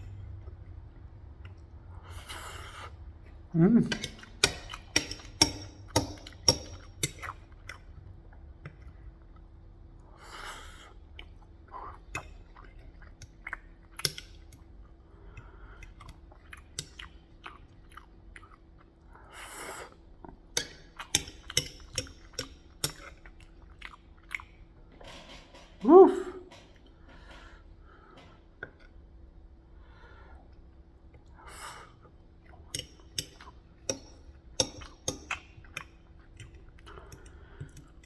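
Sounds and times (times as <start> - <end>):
faint steady hum: 0.0 - 38.0
person chewing with mouth smacks: 11.0 - 19.1, 19.9 - 24.7, 34.6 - 38.0.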